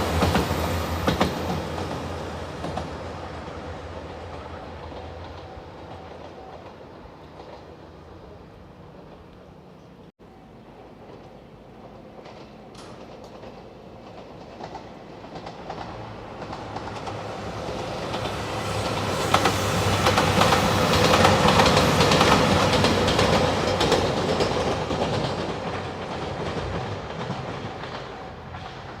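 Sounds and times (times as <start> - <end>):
train passing: 0.0 - 29.0
wheels clacking over rail joints: 10.9 - 29.0.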